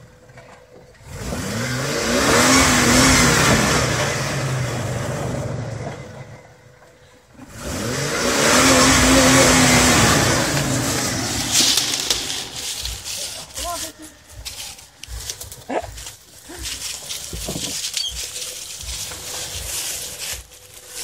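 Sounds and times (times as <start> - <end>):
engine revving hard: 1.0 - 6.4, 7.4 - 13.8.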